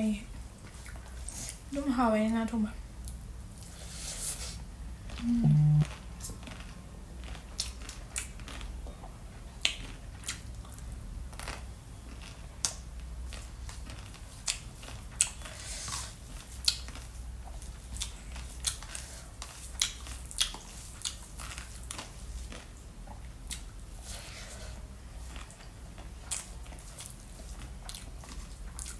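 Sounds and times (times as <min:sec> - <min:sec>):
steady low hum: 0:04.8 - 0:06.0
loud low tone: 0:05.2 - 0:05.9.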